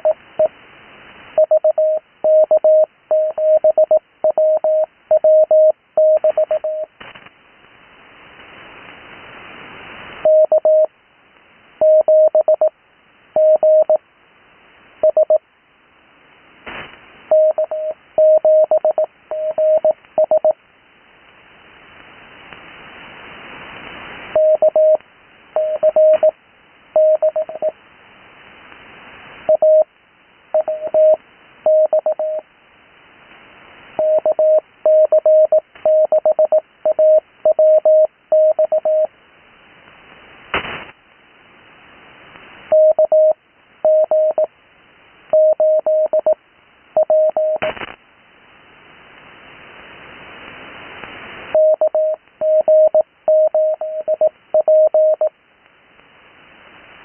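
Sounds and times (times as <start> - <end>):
radio receiver hiss: 0.0 - 15.4, 16.1 - 54.7
sharp static crackles: 0.0 - 57.0
morse code tone: 17.3 - 20.6, 25.6 - 26.3, 34.0 - 39.1, 51.6 - 55.3.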